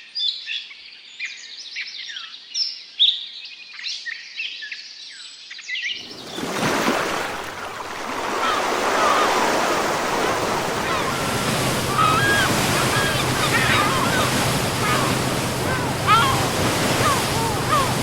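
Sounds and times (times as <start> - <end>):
rushing water: 6.0 - 18.0
small birds chirping: 8.3 - 18.0.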